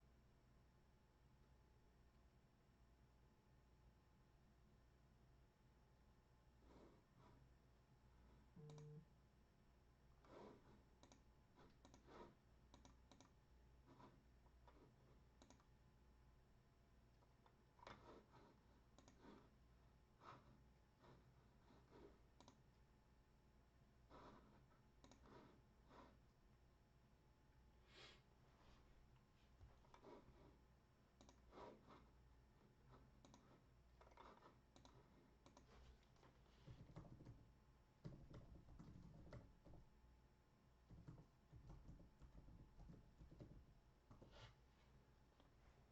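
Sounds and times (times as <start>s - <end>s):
faint clicks: 12.7s - 13.4s, 15.4s - 15.7s, 31.2s - 31.4s
soft handling noises: 31.4s - 37.5s.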